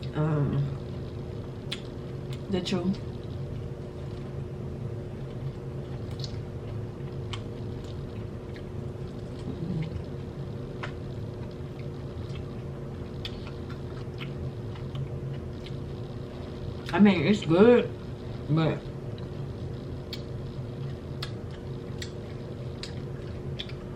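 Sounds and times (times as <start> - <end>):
steady low hum: 0.0 - 23.9
chewing and biting sandwich: 5.1 - 15.9, 20.1 - 23.9.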